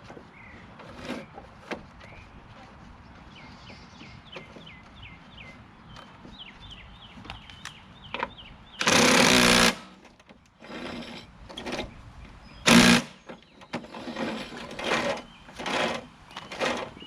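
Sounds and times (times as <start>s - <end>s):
handheld power tool running: 8.8s - 9.9s, 12.7s - 13.2s.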